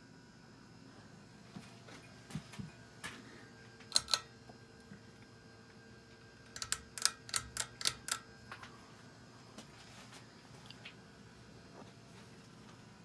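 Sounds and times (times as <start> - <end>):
faint steady hum: 0.0 - 13.0
sharp clicks: 3.9 - 4.3, 6.5 - 8.2.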